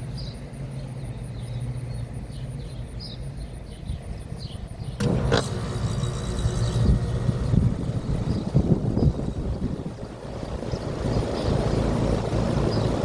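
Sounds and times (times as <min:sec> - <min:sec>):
small birds chirping: 0:00.0 - 0:05.4, 0:06.2 - 0:13.0
air conditioner condenser running: 0:00.0 - 0:13.0.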